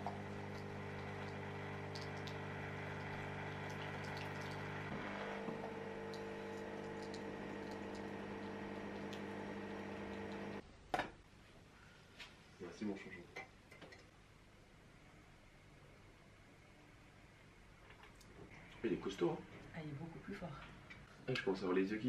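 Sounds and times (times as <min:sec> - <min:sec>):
liquid filling a cup: 0:00.0 - 0:04.9, 0:05.5 - 0:10.6
coffee machine pump hum: 0:00.0 - 0:10.6.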